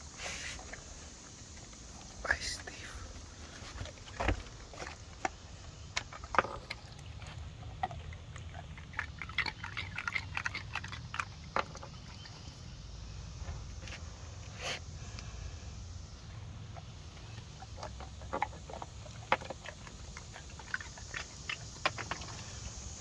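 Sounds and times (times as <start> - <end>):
dog crunching ice cubes: 3.9 - 12.6, 17.1 - 23.0.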